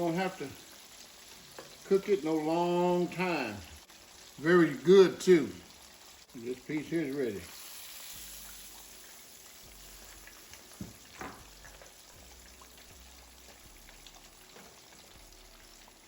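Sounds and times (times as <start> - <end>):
fish frying in hot oil: 0.0 - 16.0.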